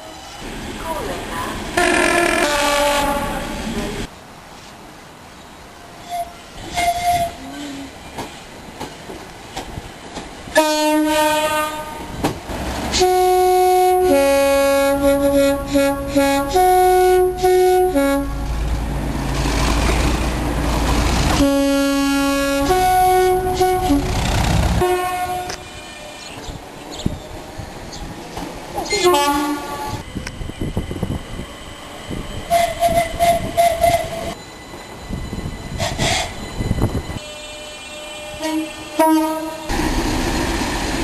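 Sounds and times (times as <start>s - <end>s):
low train rumble: 0.0s - 41.0s
locomotive two-tone horn: 1.8s - 3.6s, 6.0s - 7.8s, 10.6s - 12.1s, 12.9s - 18.6s, 21.3s - 24.2s, 24.8s - 26.0s, 28.9s - 30.0s, 37.2s - 39.7s.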